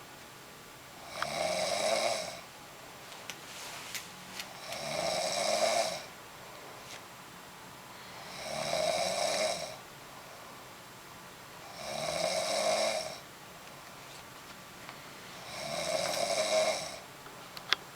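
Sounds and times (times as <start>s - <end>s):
woman snoring: 1.0s - 2.5s, 4.6s - 6.1s, 8.2s - 9.8s, 11.6s - 13.2s, 15.4s - 17.0s
quiet breathing: 7.8s - 10.7s.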